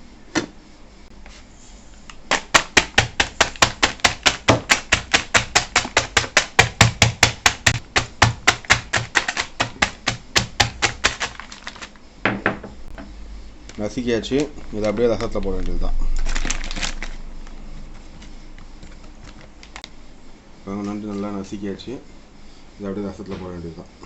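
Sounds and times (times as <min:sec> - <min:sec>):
crab shells being pounded: 0:02.1 - 0:13.0.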